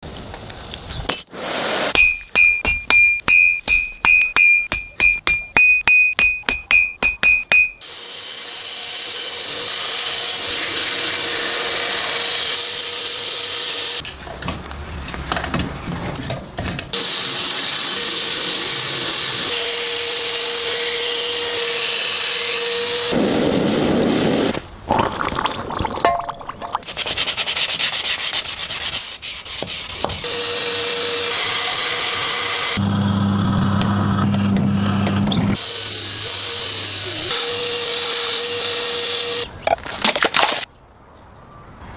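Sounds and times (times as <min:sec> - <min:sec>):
hammer ringing on anvil: 0:02.0 - 0:07.8.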